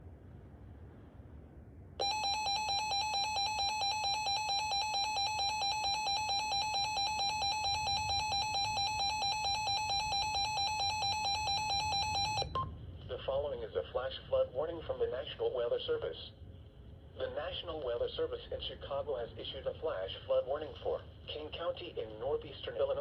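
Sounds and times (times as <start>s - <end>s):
two-tone alert alarm: 2.0s - 12.7s.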